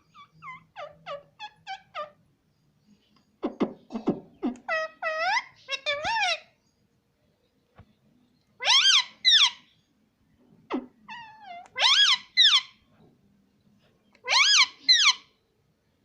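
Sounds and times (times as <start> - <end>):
parrot calling: 0.0 - 2.2, 3.4 - 6.6, 8.6 - 9.7, 10.7 - 12.8, 14.2 - 15.3
parrot squeak: 0.0 - 2.2, 4.0 - 6.5, 8.6 - 9.7, 10.7 - 12.8, 14.2 - 15.3.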